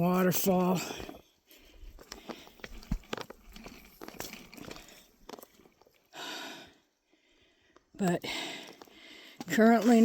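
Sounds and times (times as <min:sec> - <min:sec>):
footsteps on muddy ground: 0:00.0 - 0:06.1, 0:08.1 - 0:10.0.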